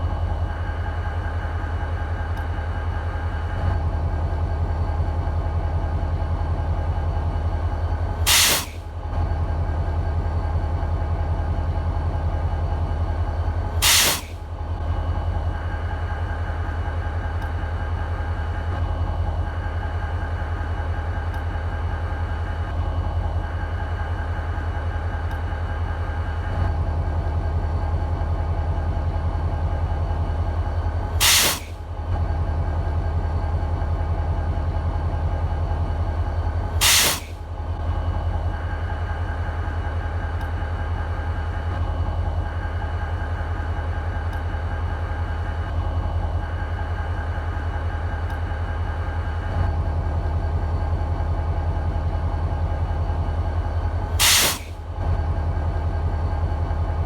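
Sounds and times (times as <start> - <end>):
air hiss blasts: 8.3 - 8.8, 13.8 - 14.4, 31.2 - 31.8, 36.8 - 37.4, 54.2 - 54.8.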